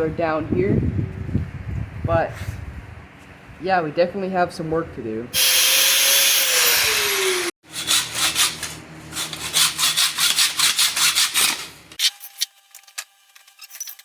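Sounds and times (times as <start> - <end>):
angle grinder spinning down: 5.4 - 7.5
hand saw cutting metal: 5.4 - 12.3.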